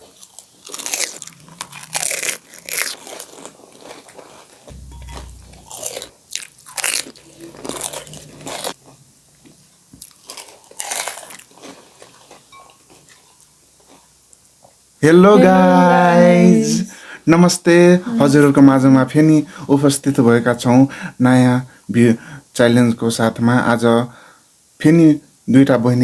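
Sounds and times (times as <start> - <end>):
crunchy shells being chewed: 0.0 - 4.6, 10.0 - 12.5.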